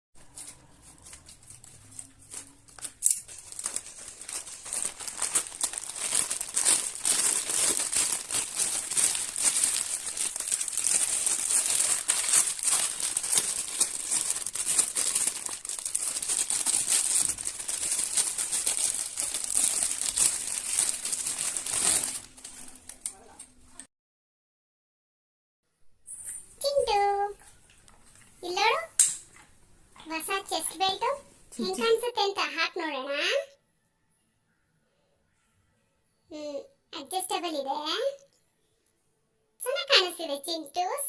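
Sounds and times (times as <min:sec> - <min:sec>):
packaging crinkling: 0:00.2 - 0:23.2.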